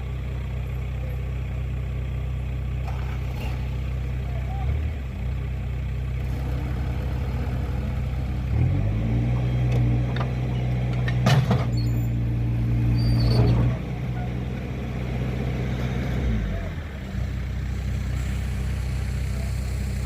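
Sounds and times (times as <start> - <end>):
heavy diesel engine revving: 6.1 - 20.0.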